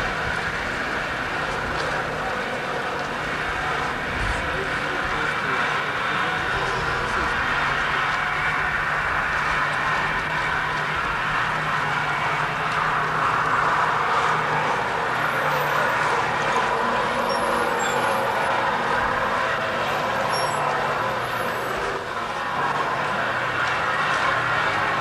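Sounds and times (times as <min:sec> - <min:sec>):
street noise: 0:00.0 - 0:25.0.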